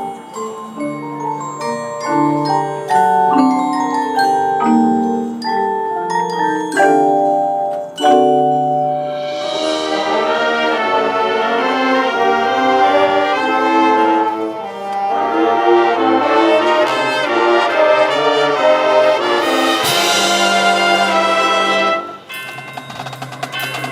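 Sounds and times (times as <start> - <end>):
mallet percussion playing: 0.0 - 23.9
marching band playing: 2.3 - 23.9
brass section playing: 9.0 - 22.4.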